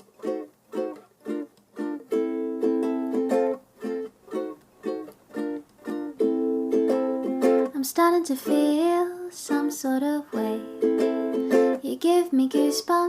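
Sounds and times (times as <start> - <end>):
ukulele strumming chords: 0.0 - 13.0.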